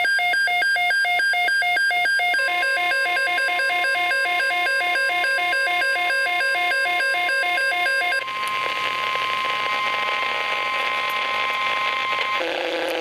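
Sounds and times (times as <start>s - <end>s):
steady high alarm tone: 0.0s - 8.4s
radio static: 8.2s - 13.0s.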